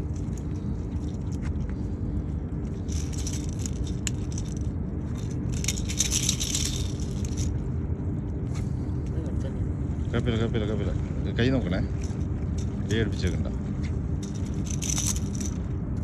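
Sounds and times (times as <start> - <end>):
rattling and scraping of fishing lure: 0.0 - 7.7, 11.8 - 15.8
low rumble: 0.0 - 16.0.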